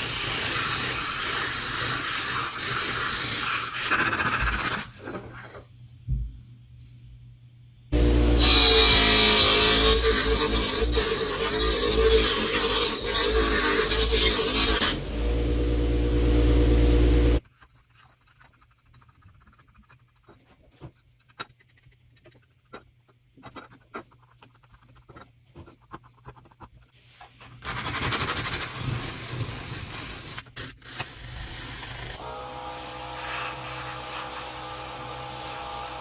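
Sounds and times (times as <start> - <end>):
power tool running: 7.9 - 17.4, 32.2 - 36.0
loud sanding tool: 8.0 - 17.4, 32.2 - 36.0.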